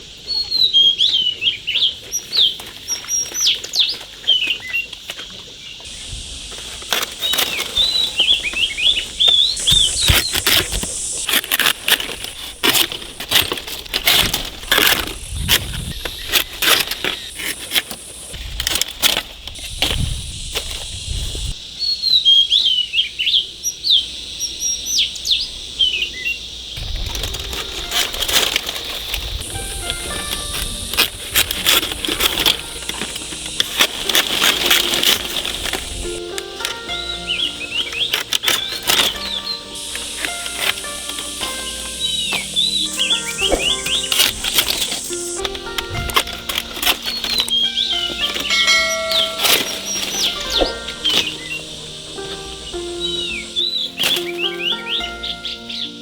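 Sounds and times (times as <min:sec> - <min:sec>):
small birds chirping: 0:00.0 - 0:56.0.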